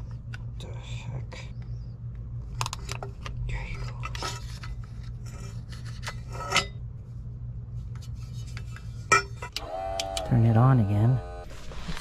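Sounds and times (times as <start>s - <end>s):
steady low hum: 0.0s - 12.0s
car parts scraping and clicking: 2.6s - 6.8s, 7.9s - 10.2s.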